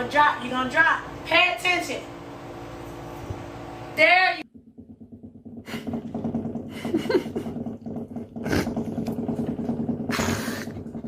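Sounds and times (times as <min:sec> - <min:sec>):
cat purring: 0:05.1 - 0:11.0.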